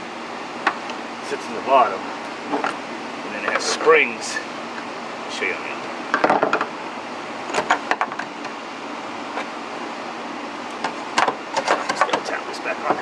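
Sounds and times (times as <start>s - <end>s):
fan running steadily: 0.0s - 13.0s
clicks and knocks of parts: 10.8s - 12.3s.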